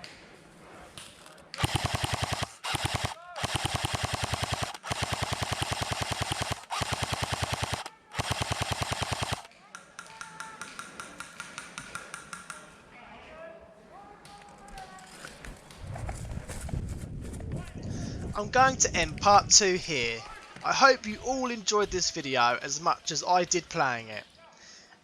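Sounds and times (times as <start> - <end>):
airsoft gun firing bursts: 1.6 - 9.5.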